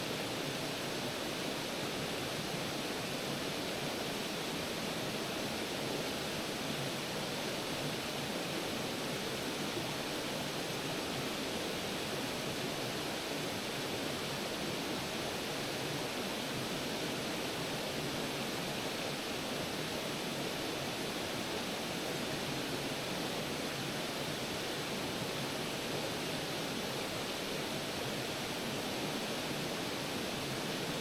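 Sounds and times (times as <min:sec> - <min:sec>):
creek waterfall rushing: 0:00.0 - 0:31.0.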